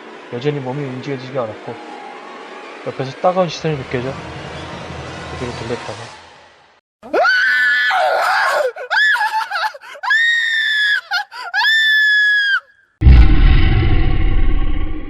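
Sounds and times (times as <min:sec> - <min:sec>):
woman screaming: 0:07.0 - 0:12.7
distorted low music crash: 0:13.0 - 0:15.0.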